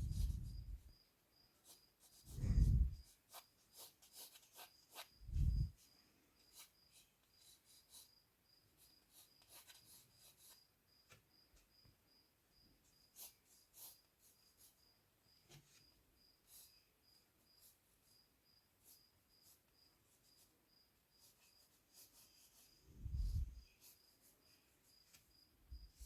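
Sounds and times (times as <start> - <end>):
pencil scratching on paper: 0.0 - 0.9, 1.6 - 8.1, 8.7 - 10.7, 13.0 - 14.8, 21.2 - 26.0
cricket chirping: 0.1 - 1.9, 5.8 - 13.2, 13.9 - 21.7.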